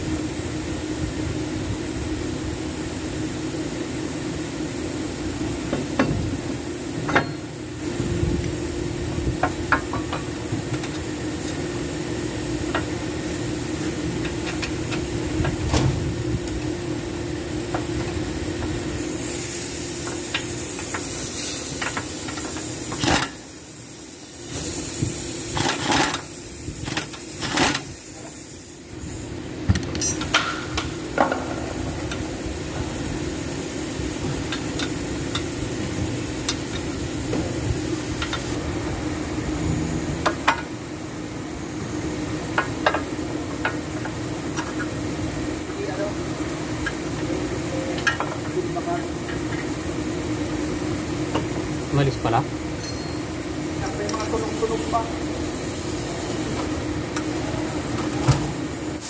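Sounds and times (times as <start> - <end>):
steady hum and hiss: 0.0 - 59.0
tools clattering: 29.9 - 30.6.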